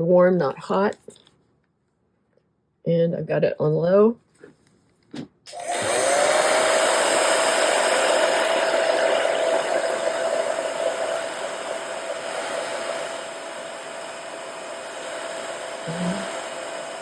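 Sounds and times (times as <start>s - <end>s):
hair dryer blowing: 5.5s - 17.0s.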